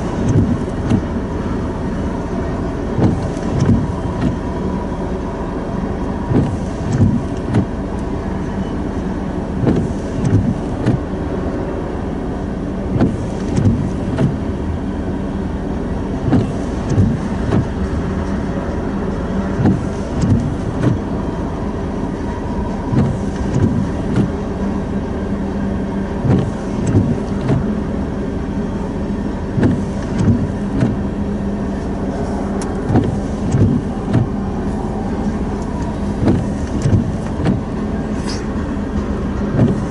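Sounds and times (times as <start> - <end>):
steady train hum: 0.0 - 39.9.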